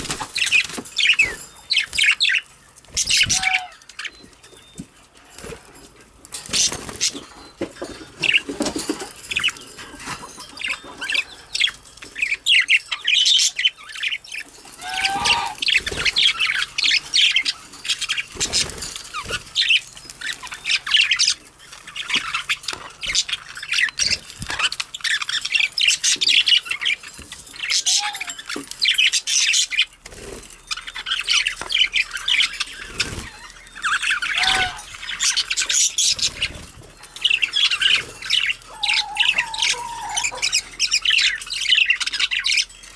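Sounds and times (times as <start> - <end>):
budgerigars chattering: 0.0 - 4.2, 9.4 - 30.0, 30.6 - 42.7
budgerigar squawks: 14.8 - 15.7, 34.3 - 34.9.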